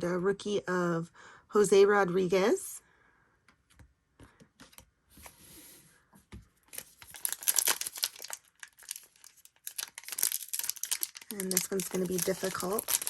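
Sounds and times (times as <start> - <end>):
soft brushing and sliding: 5.1 - 6.2
wrapper crinkling and tearing: 6.7 - 13.0.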